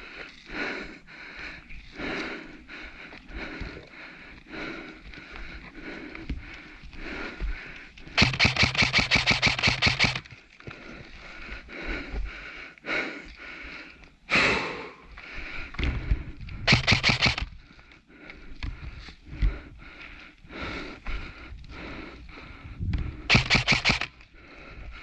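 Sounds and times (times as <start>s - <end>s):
airsoft rifle firing bursts: 8.2s - 10.4s, 16.7s - 17.5s, 23.3s - 24.2s.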